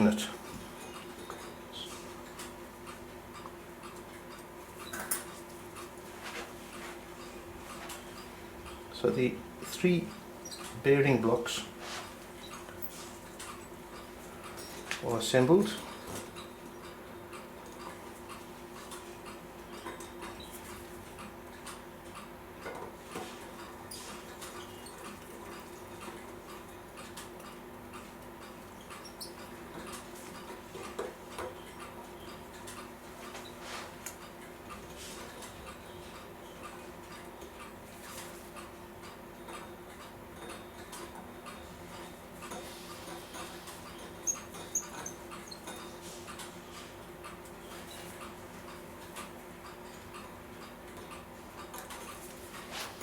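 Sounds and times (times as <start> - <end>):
light clicks of clock parts: 0.0 - 53.0
clock ticking: 12.5 - 52.4.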